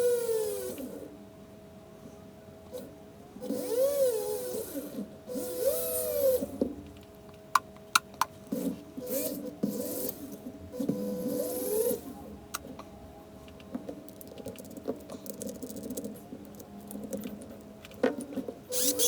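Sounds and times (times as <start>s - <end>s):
rotary grinder cutting wood: 18.7s - 19.0s.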